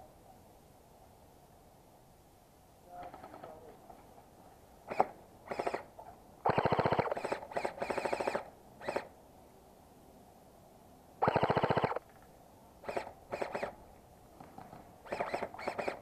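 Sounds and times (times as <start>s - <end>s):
airsoft guns firing bursts: 4.9s - 5.8s, 6.4s - 9.1s, 11.2s - 12.0s, 12.8s - 13.8s, 15.0s - 16.0s.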